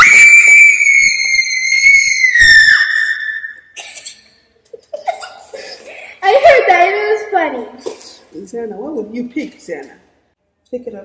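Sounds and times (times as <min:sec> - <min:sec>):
girl screaming: 0:00.0 - 0:03.6.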